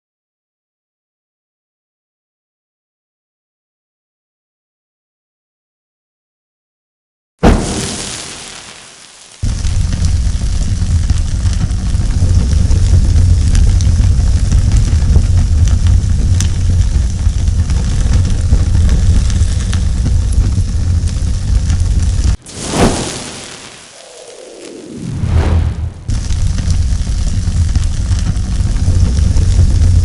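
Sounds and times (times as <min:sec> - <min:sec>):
fire crackles: 0:07.4 - 0:30.0
roaring fire: 0:07.4 - 0:30.0.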